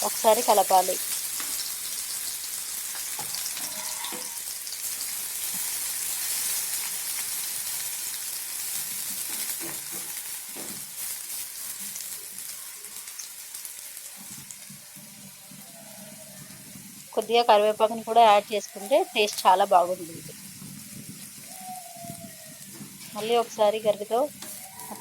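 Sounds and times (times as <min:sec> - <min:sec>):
onions sizzling in hot oil: 0:00.0 - 0:25.0.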